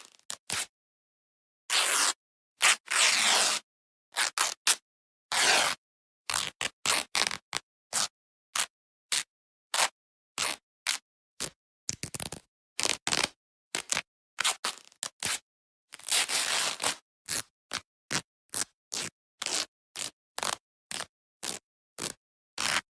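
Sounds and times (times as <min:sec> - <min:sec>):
velcro ripping apart: 0:01.7 - 0:03.6, 0:04.2 - 0:22.9.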